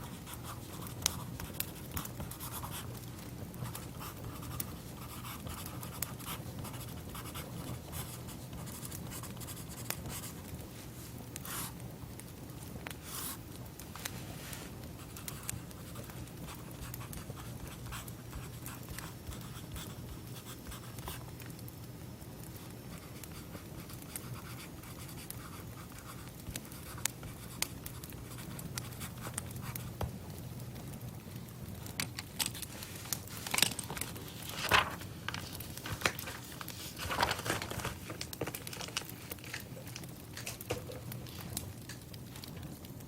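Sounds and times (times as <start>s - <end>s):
steady low hum: 0.0s - 43.0s
soft scratching and rustling: 13.0s - 21.1s, 32.3s - 42.6s.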